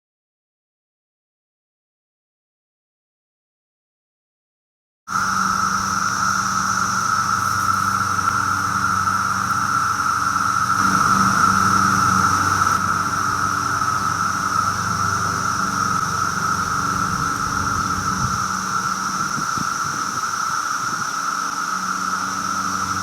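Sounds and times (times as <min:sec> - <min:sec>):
cicadas chorusing: 0:05.1 - 0:23.0
low hum: 0:05.1 - 0:23.0.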